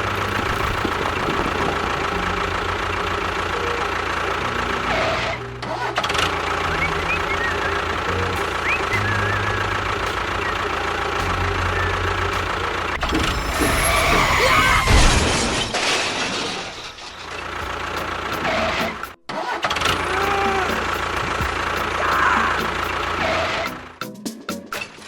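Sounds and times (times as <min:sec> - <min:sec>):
engine running with low rumble: 0:00.0 - 0:15.0, 0:19.8 - 0:24.0.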